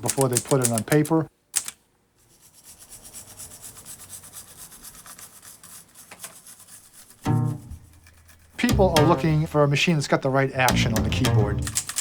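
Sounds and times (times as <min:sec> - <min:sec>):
fast scrubbing strokes: 0:02.3 - 0:08.7
sharp clicks: 0:08.6 - 0:09.6, 0:10.6 - 0:12.0.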